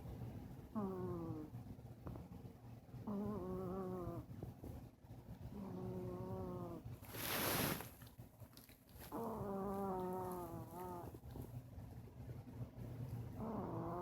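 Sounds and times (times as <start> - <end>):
dog snoring: 0.7 - 1.6, 3.0 - 4.3, 5.5 - 7.8, 9.1 - 11.2, 13.4 - 14.0.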